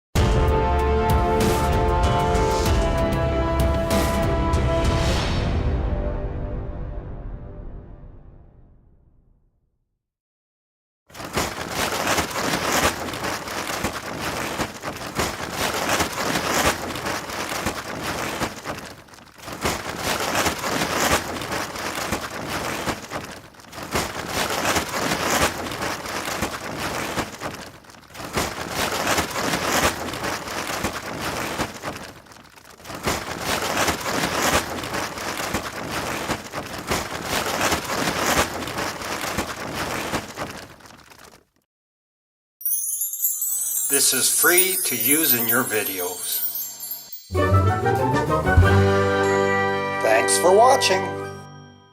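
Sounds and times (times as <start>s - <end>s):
plastic tarp flapping in wind: 1.1s - 4.6s, 11.1s - 41.6s, 43.6s - 47.2s.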